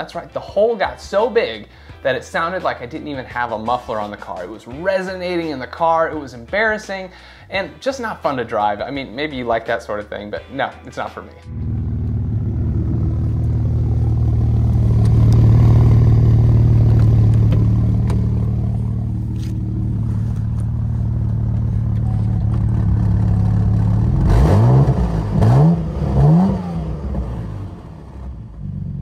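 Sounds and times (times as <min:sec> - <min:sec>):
car engine droning and revving: 0:11.5 - 0:29.0.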